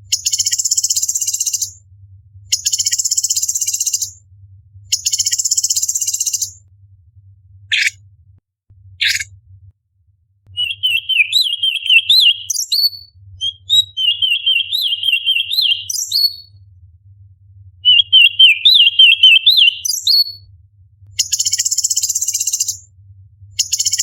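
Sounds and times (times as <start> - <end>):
bird warbling song: 7.7 - 8.0, 9.0 - 9.3, 10.6 - 16.5, 17.9 - 20.4.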